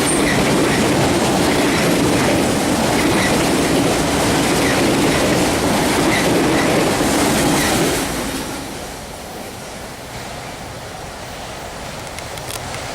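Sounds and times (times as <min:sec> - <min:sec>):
freight train wheels clacking: 0:00.0 - 0:08.5
train rumble: 0:00.0 - 0:12.9.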